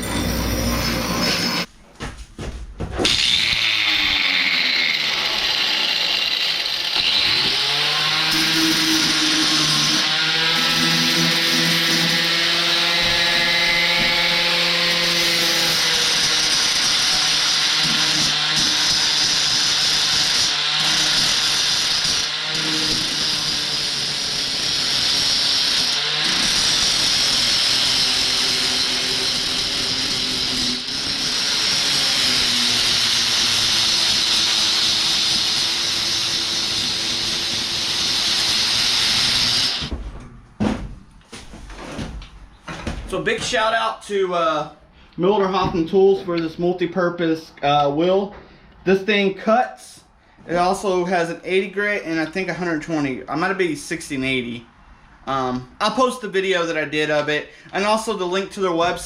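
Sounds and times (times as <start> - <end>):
angle grinder grinding steel: 0.0 - 1.7, 3.0 - 39.9.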